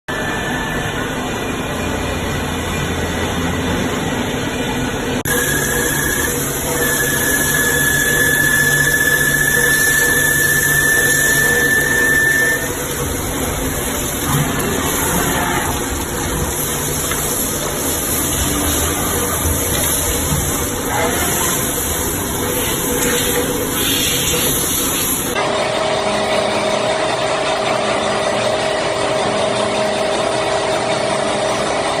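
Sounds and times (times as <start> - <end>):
low machine hum: 0.1 - 32.0
high-pitched machine squeal: 5.3 - 13.0
machine hiss: 5.3 - 25.4.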